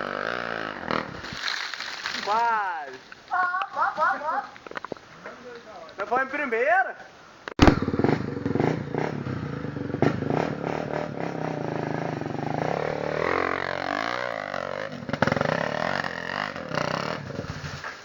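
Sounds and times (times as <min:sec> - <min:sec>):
motorcycle engine running hard: 0:07.6 - 0:17.9.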